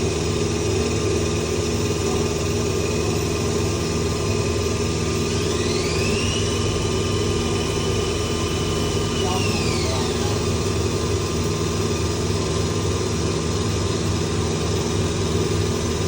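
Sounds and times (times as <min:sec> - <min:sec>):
lathe machine hum: 0:00.0 - 0:16.0
spindle whine: 0:01.5 - 0:13.1.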